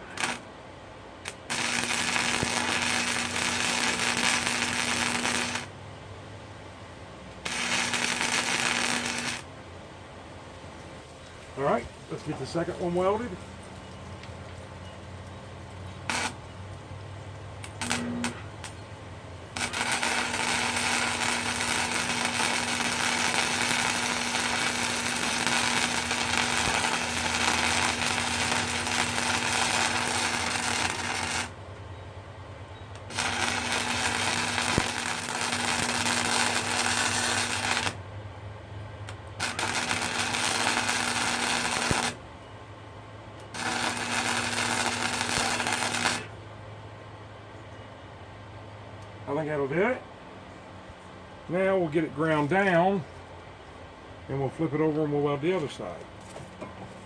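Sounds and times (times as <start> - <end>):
arc welding crackle and hum: 0.0 - 0.5, 1.2 - 5.8, 7.2 - 9.6, 10.7 - 31.8, 32.9 - 38.1, 39.0 - 42.4, 43.4 - 46.4.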